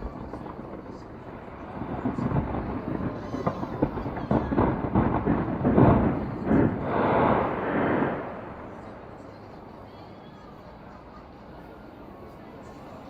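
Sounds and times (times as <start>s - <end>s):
fireworks popping and banging: 0.0s - 10.1s
fireworks rumbling: 0.0s - 13.0s.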